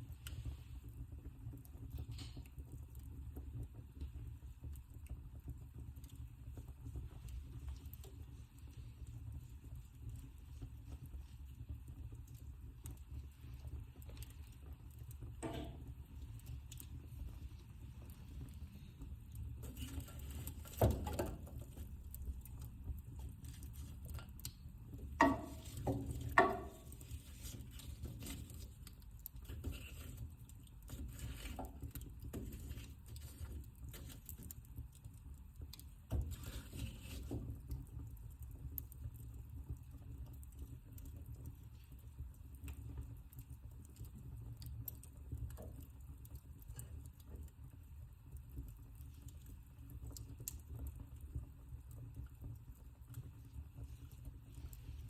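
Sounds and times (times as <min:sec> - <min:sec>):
wood fire crackling: 0:00.0 - 0:55.0.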